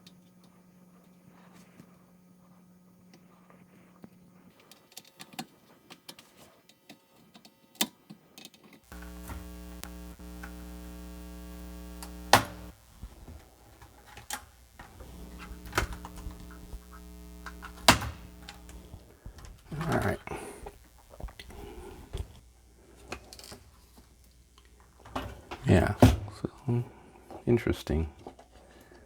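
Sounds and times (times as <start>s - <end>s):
faint small clicks and taps: 4.0s - 19.6s
sharp clicks: 8.9s - 21.8s
small motor hum: 8.9s - 22.5s.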